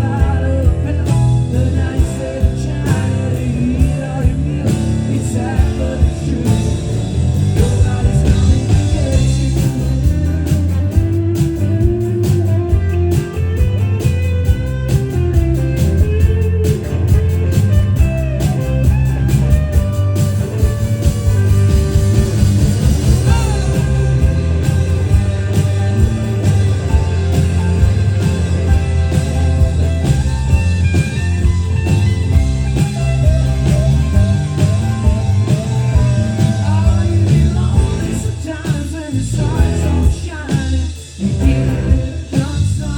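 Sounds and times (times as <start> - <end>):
bending sliding lead guitar: 0.0 - 42.9
guitar: 0.0 - 42.9
live blues-rock band: 0.0 - 42.9
steady bass line: 0.0 - 42.9.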